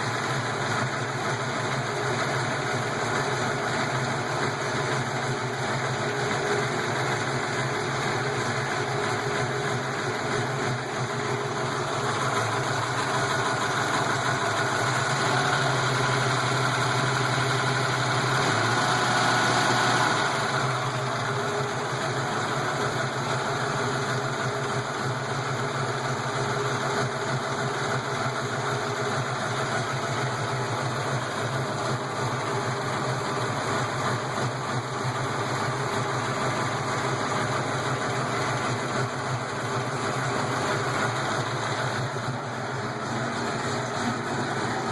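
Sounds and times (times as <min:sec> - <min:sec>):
engine idling with lifter ticking: 0:00.0 - 0:44.9.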